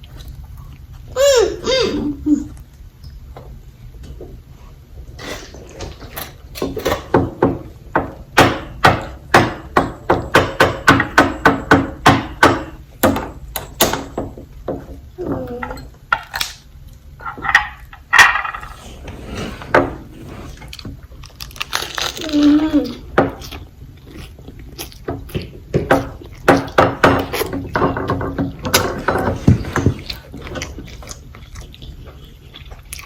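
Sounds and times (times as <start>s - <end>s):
crunchy chewing: 20.2s - 27.8s, 29.4s - 33.0s.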